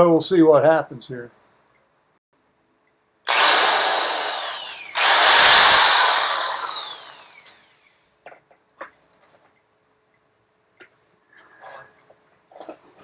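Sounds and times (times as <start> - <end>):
electric drill motor whine: 3.3 - 7.9.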